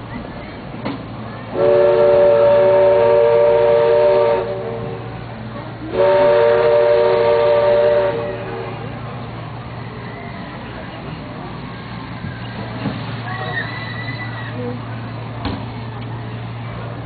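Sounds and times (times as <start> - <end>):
steam whistle blasts: 1.6 - 5.0, 5.9 - 8.6.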